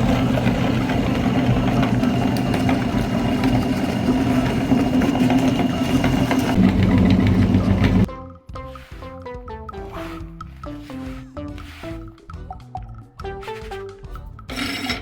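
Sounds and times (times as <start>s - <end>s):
electric meat grinder motor humming: 0.0s - 8.1s.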